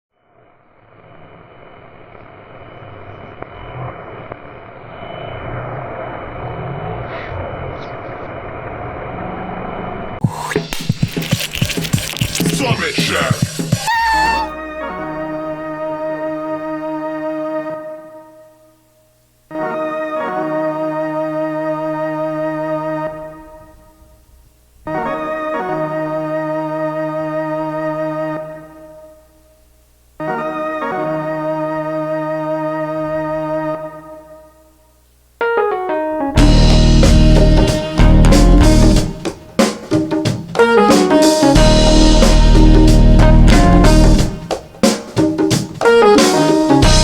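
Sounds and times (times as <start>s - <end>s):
band music with drums: 10.2s - 14.6s, 36.4s - 47.0s
organ-like keyboard chords: 19.5s - 24.0s, 24.9s - 29.3s, 30.2s - 34.7s, 35.4s - 47.0s.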